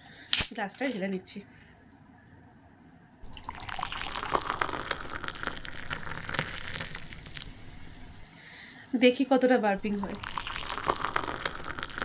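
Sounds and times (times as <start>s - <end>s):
cola pouring into a glass: 3.2s - 8.3s, 9.8s - 12.0s
fizzing crackle: 3.2s - 8.3s, 9.8s - 12.0s.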